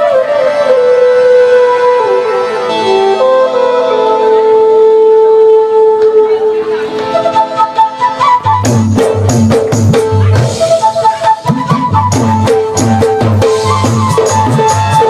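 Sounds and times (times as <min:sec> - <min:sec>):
live band playing: 0:00.0 - 0:15.0.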